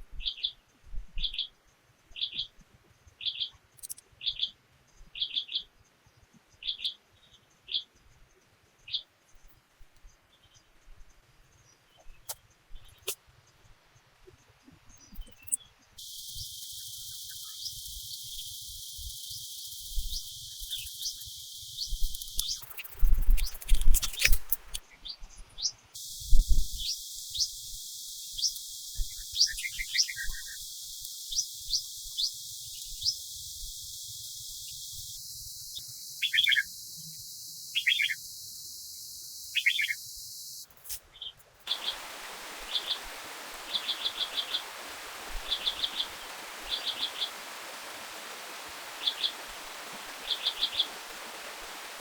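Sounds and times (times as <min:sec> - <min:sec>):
forest ambience: 0:00.0 - 0:52.0
small birds chirping and trilling: 0:00.2 - 0:10.8, 0:14.4 - 0:52.0
stream hiss: 0:16.0 - 0:24.8, 0:26.0 - 0:40.9, 0:41.6 - 0:52.0
rustling: 0:21.9 - 0:24.8.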